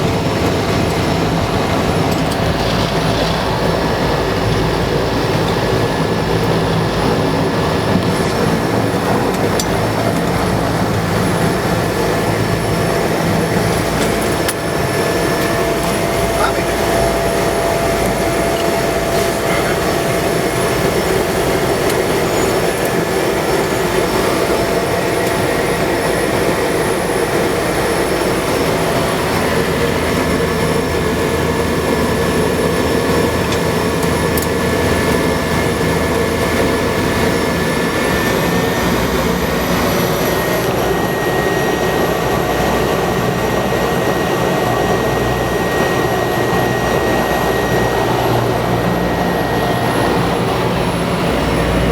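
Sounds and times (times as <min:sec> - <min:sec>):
turboprop engine drone with whine: 0:00.0 - 0:51.9.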